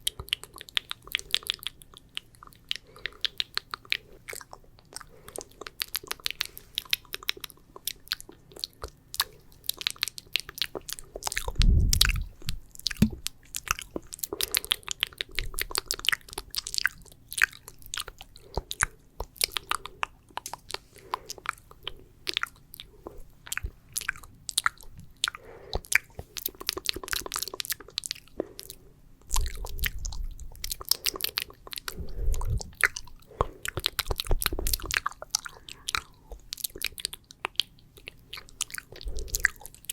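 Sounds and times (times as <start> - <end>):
wet mouth clicks and smacks: 0.0 - 39.9
low muffled thumps: 11.6 - 13.3.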